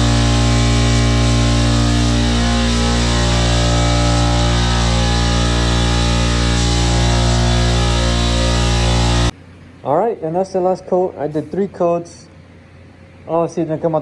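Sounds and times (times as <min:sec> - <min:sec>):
distorted electric guitar rock: 0:00.0 - 0:09.3.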